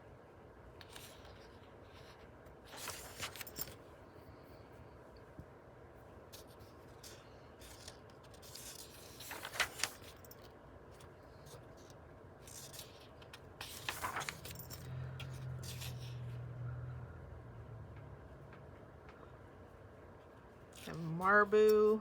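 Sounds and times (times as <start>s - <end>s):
low steady hum: 0.0s - 22.0s
book pages rustling: 0.8s - 3.8s, 6.4s - 16.2s.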